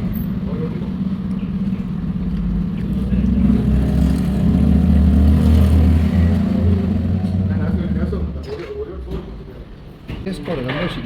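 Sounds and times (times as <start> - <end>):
car engine and road hum: 0.0 - 8.4.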